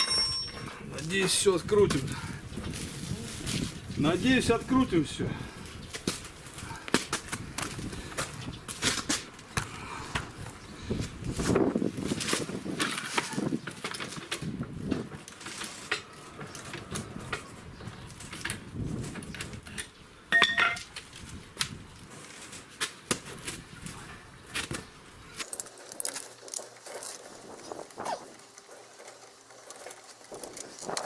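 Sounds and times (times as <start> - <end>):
metal hand tools clinking: 0.0 - 0.8, 20.4 - 20.9
ringing metal clank: 0.0 - 0.8, 20.4 - 20.9.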